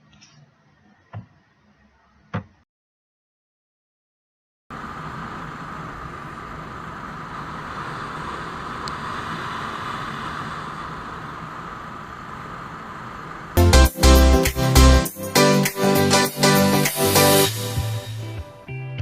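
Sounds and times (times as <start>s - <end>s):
wind and road noise: 4.7s - 13.6s.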